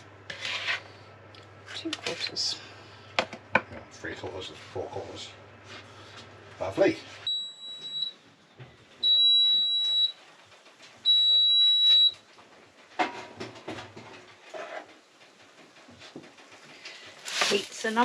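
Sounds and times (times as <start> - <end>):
electronic appliance beeps: 7.3 - 8.2, 9.0 - 10.2, 11.0 - 12.2
light knocks and clatter: 12.3 - 17.0.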